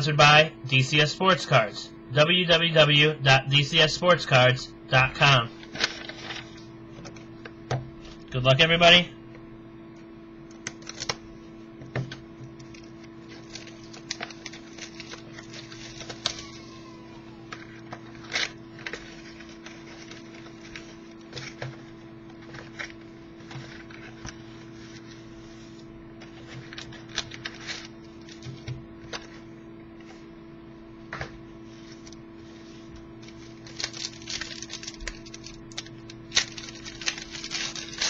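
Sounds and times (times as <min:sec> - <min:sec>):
steady low hum: 0:00.0 - 0:38.0
cardboard and wrapper crinkling: 0:05.6 - 0:06.6, 0:12.6 - 0:25.1, 0:26.2 - 0:29.3, 0:33.2 - 0:38.0.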